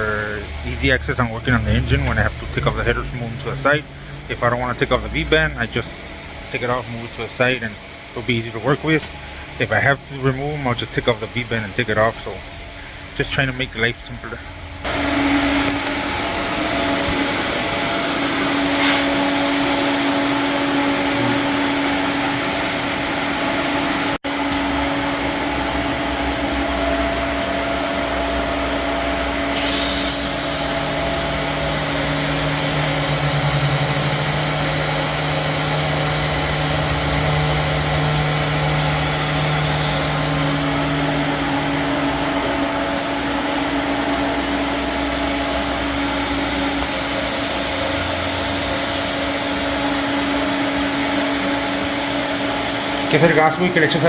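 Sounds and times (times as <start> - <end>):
motor whirring: 29.5 - 42.5.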